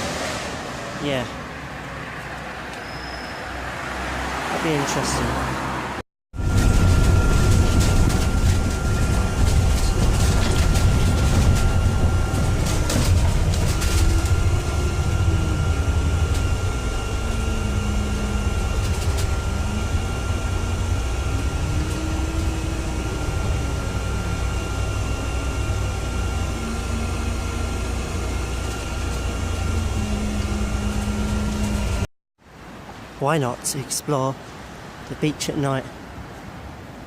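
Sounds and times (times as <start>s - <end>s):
bus engine rumbling: 0.0s - 32.1s
thin high whine: 6.4s - 32.1s.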